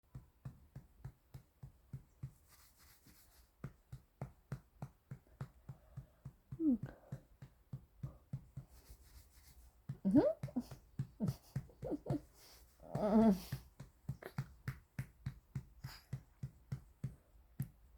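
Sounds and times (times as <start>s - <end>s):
soft regular thumps: 0.1s - 17.9s.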